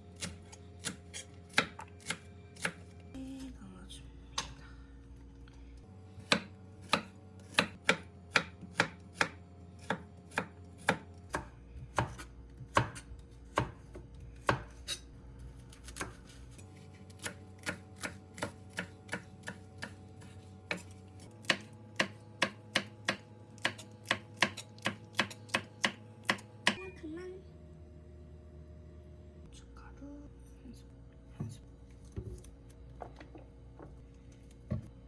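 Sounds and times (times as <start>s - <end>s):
knife chopping on cutting board: 0.2s - 2.8s, 6.2s - 15.0s, 15.8s - 16.2s, 16.8s - 26.8s.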